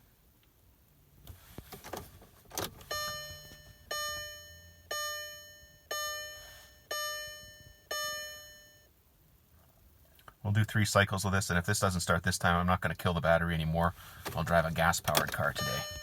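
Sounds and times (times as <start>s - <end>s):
car warning chime: 2.8s - 9.0s, 15.1s - 16.0s.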